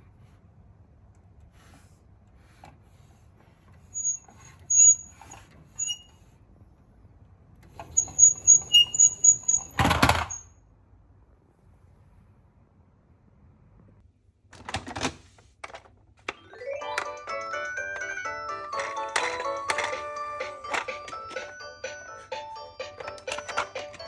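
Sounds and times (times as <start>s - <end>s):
toy car wheels squeaking: 4.0s - 6.1s, 7.9s - 10.4s
toy car rolling rumble: 7.8s - 10.4s, 17.0s - 21.6s
toy car clattering: 17.0s - 21.6s, 22.9s - 24.0s.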